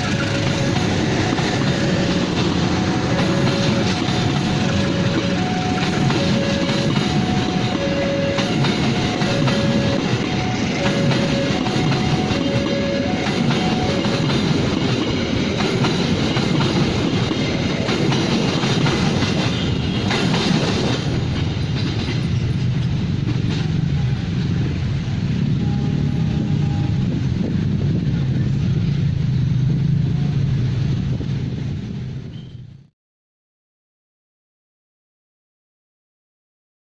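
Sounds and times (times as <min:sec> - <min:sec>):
train rumbling past: 0:00.0 - 0:32.9
two-note warning tone: 0:02.9 - 0:14.3.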